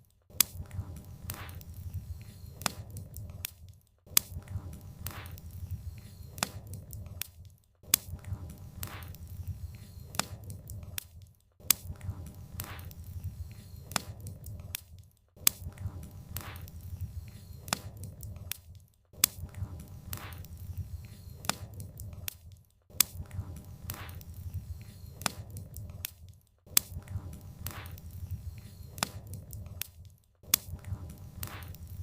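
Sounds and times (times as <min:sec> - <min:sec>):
wood fire crackling and popping: 0:00.0 - 0:32.0.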